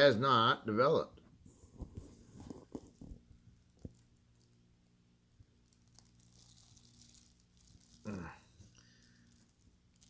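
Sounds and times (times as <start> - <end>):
soft rustle: 1.4 - 10.0
small clicks and taps: 1.8 - 6.1.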